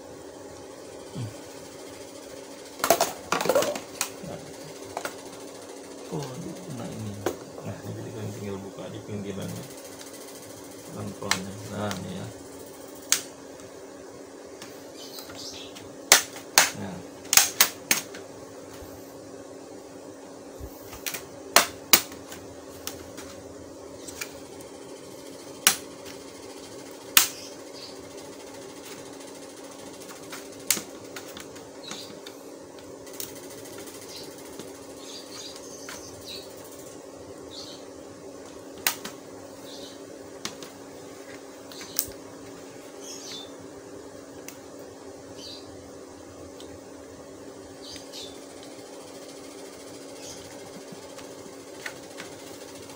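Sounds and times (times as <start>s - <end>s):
steady low hum: 0.0s - 52.9s.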